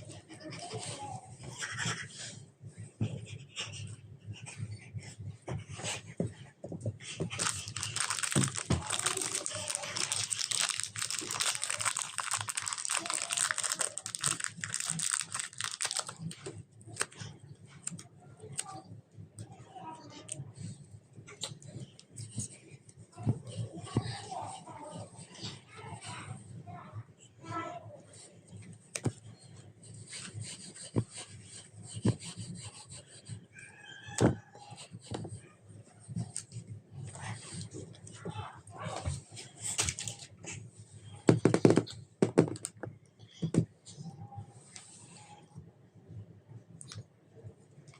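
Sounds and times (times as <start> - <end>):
hands squishing slime: 7.2 - 18.0.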